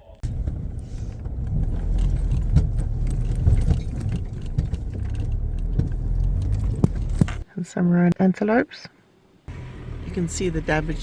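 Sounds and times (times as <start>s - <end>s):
vehicle engine and tyres rumbling: 0.2s - 7.4s, 9.5s - 11.0s
loose items rattling: 1.4s - 7.4s.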